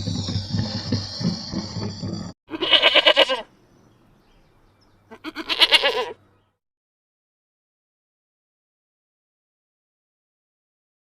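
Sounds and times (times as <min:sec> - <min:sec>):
farmyard noise: 0:00.0 - 0:03.6, 0:05.0 - 0:06.4
goat or sheep bleating: 0:02.5 - 0:03.5, 0:05.1 - 0:06.2.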